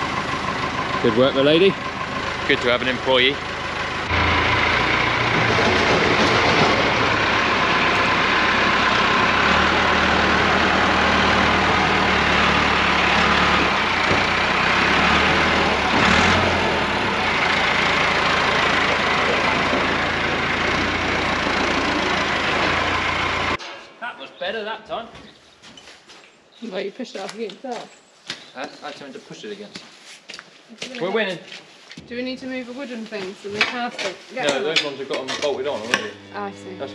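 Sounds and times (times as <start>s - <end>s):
tractor engine running: 0.0s - 23.7s.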